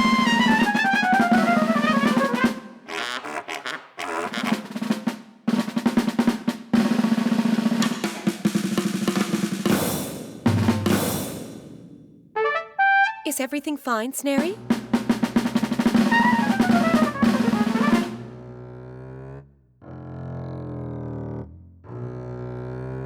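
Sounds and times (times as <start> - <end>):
snare drum rolls: 0.0 - 2.8, 4.3 - 12.0, 14.4 - 18.4.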